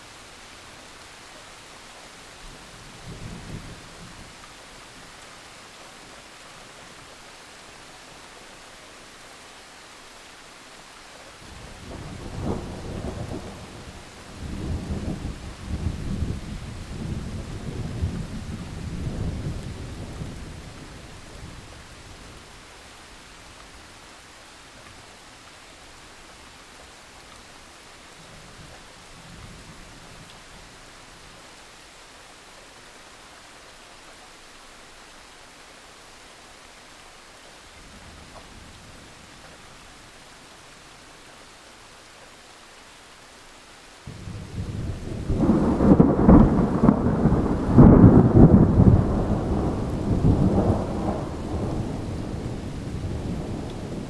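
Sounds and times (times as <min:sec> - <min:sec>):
steady rain: 0:00.0 - 0:54.0
loud peal of thunder: 0:44.1 - 0:54.0
thunder rumbling: 0:44.1 - 0:54.0.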